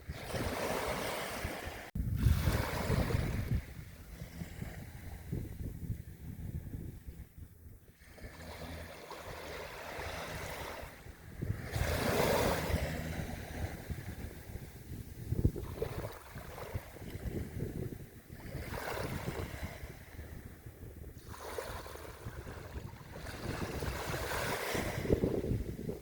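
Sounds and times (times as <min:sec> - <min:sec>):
wind buffeting microphone: 0:00.0 - 0:26.0
surf washing onto beach: 0:08.0 - 0:17.7.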